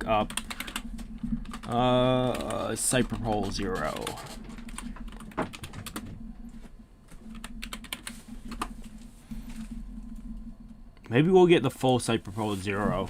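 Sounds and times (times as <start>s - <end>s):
steady low hum: 0.0s - 13.0s
keyboard typing: 0.1s - 6.2s, 7.3s - 9.8s.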